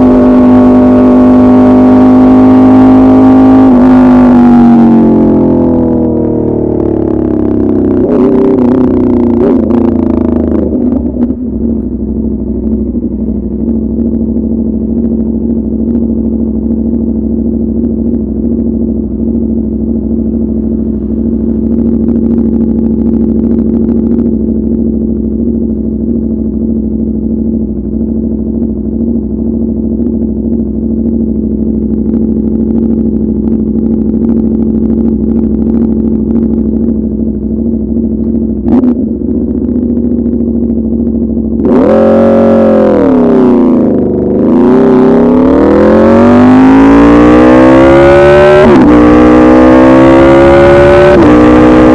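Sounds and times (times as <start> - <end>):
motorcycle engine idling: 4.8 - 41.8, 42.9 - 44.5.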